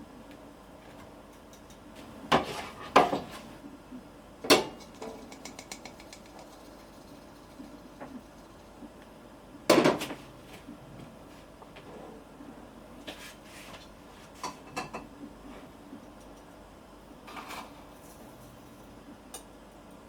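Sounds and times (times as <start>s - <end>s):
dishes clattering: 14.4s - 15.1s.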